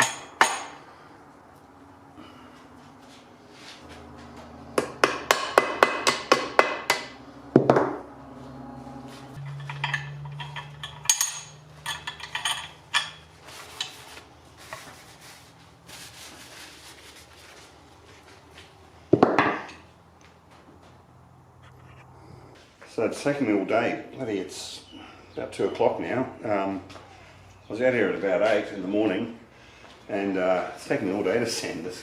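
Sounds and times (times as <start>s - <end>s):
low steady hum: 0.0s - 29.8s
sharp hammering knocks: 4.8s - 8.1s
ringing metal clang: 9.4s - 13.3s
light clinks and taps: 9.4s - 14.0s.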